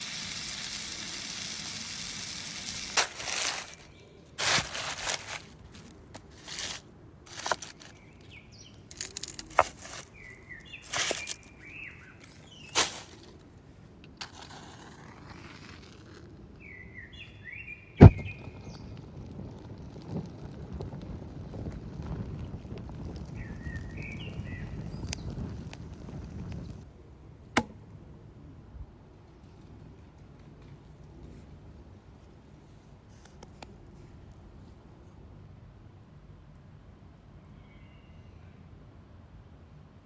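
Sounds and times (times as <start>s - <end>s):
steady hiss: 0.0s - 8.0s
sharp cracks and knocks: 2.9s - 8.0s, 8.8s - 11.5s, 12.2s - 13.4s, 18.0s - 20.9s
small birds chirping: 7.3s - 13.3s, 23.0s - 26.8s.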